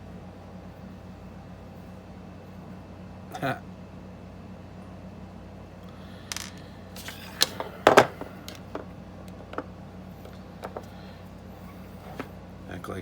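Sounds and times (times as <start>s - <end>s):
pistol parts clicking and clinking: 6.2s - 9.7s.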